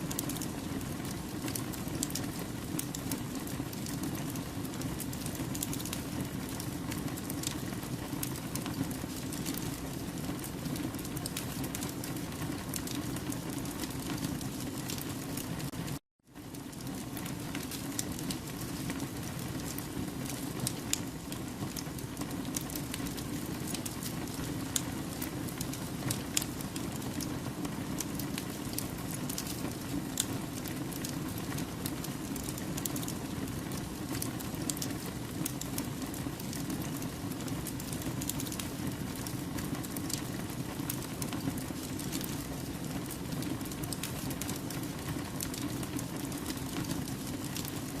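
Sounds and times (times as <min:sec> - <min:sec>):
fire crackling and popping: 0:00.0 - 0:48.0
campfire low rushing: 0:16.5 - 0:48.0.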